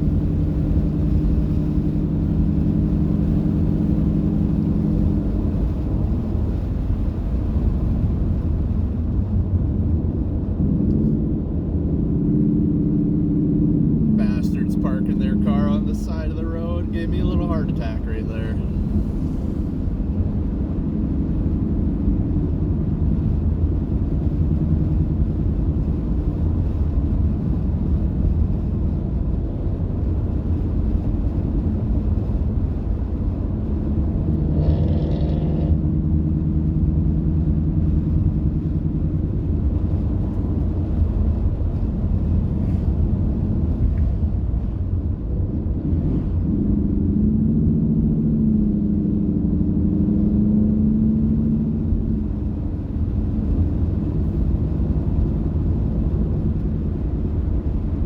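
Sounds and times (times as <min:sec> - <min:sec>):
car engine and road rumble: 0:00.0 - 0:58.0.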